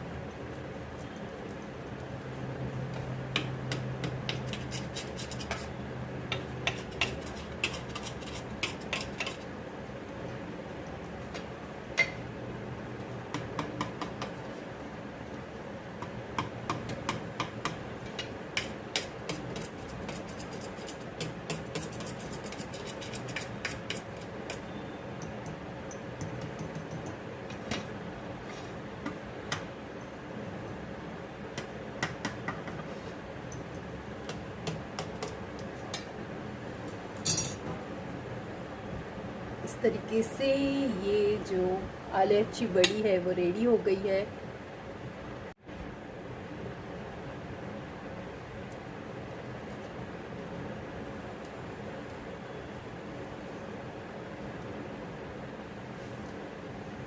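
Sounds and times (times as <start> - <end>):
faint steady hum: 0.0 - 57.0
metal utensils clinking on cookware: 37.2 - 37.6.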